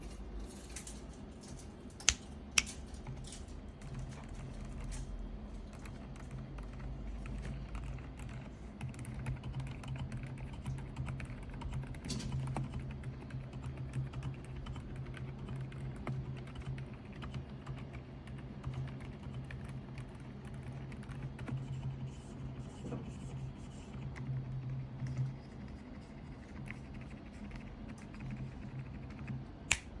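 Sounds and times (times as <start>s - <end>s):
sharp keyboard clicks: 2.0s - 5.0s, 5.6s - 21.9s.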